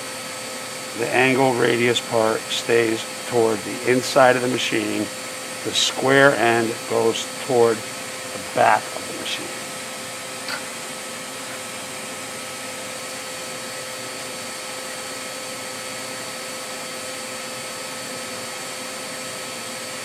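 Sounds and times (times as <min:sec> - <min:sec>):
mechanical hum and hiss: 0:00.0 - 0:20.0.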